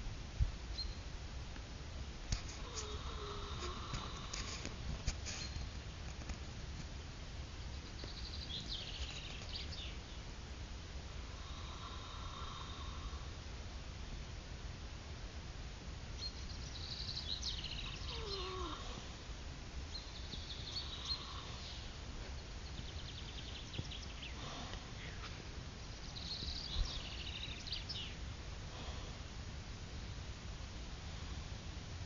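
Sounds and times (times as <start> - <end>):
steady low hum: 0.0 - 32.0
pet snoring squeaks: 2.5 - 4.6, 18.0 - 19.1.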